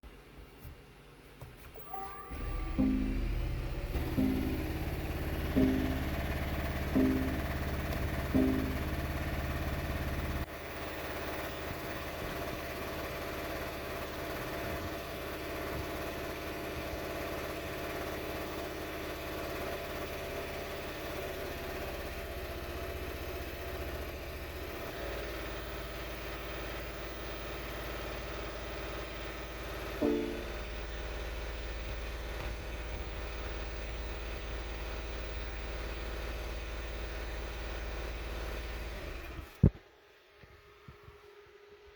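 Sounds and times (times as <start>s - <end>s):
brief tone: 1.8s - 10.0s, 30.0s - 30.9s
engine sputtering unevenly: 2.3s - 27.7s.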